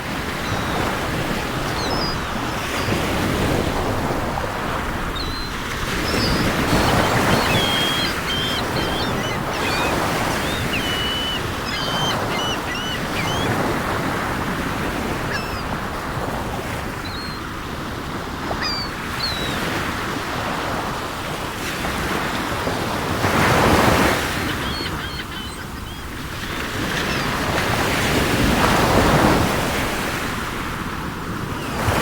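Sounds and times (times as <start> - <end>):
gulls calling: 0.0 - 20.6, 23.2 - 29.4
sea waves washing on shore: 0.0 - 32.0.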